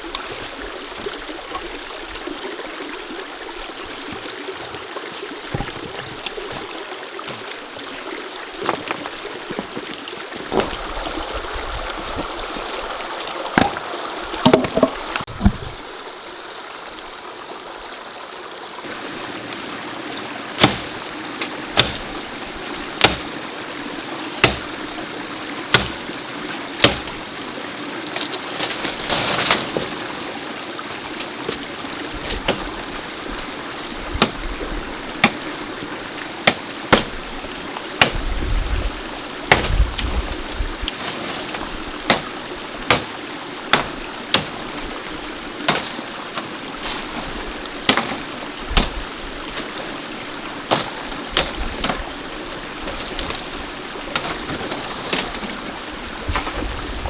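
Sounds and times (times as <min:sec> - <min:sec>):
mountain stream flowing: 0:00.0 - 0:57.0
sharp knocks: 0:13.6 - 0:15.7, 0:25.7 - 0:26.1, 0:45.7 - 0:47.3.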